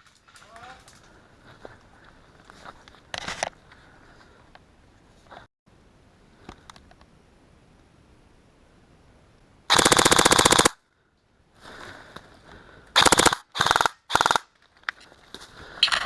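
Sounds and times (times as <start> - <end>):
airsoft rifle firing bursts: 9.7 - 10.8, 13.0 - 14.5.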